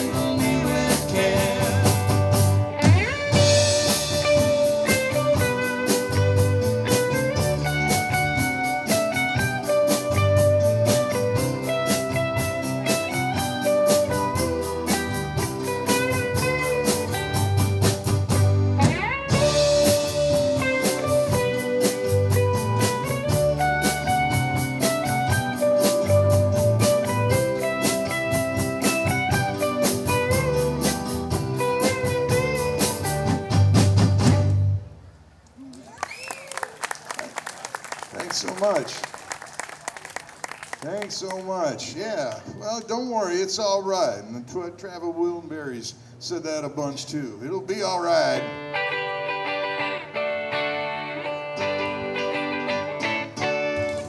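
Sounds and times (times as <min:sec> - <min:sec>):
lead melody: 0:00.0 - 0:34.6, 0:48.5 - 0:54.0
drum kit beat: 0:00.0 - 0:34.8
bass: 0:00.0 - 0:39.8, 0:46.6 - 0:54.0.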